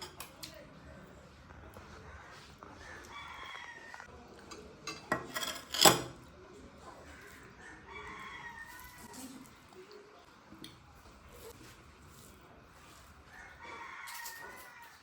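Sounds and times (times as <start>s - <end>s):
rooster crowing: 2.8s - 4.1s, 7.6s - 9.3s, 13.3s - 15.0s.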